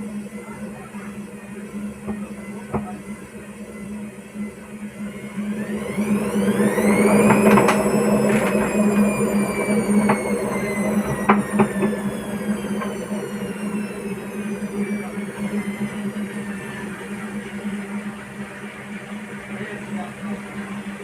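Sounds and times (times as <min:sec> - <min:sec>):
washing machine motor whine: 0:00.0 - 0:21.0
washing machine knocking: 0:11.0 - 0:12.1.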